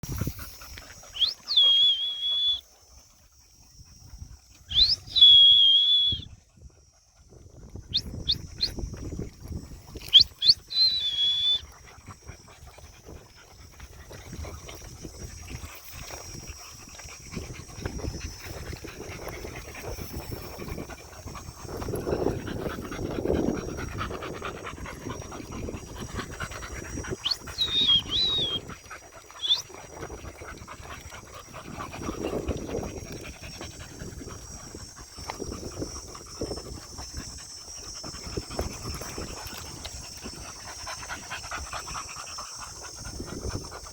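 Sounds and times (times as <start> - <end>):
dogs panting: 0.0 - 43.9
short high whistles: 1.1 - 2.6, 4.7 - 6.3, 10.1 - 11.7, 27.2 - 28.7, 29.4 - 29.7.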